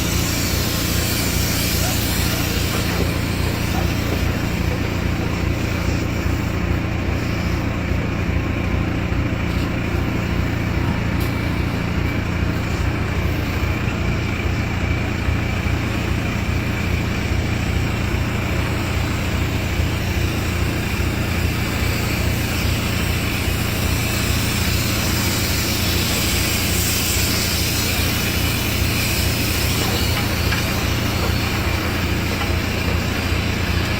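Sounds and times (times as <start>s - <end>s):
rushing hiss: 0.0s - 7.7s, 18.3s - 33.9s.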